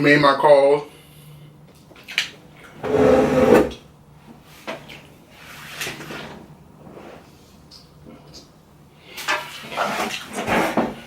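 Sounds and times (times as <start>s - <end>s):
loud rough noise: 2.8s - 3.8s.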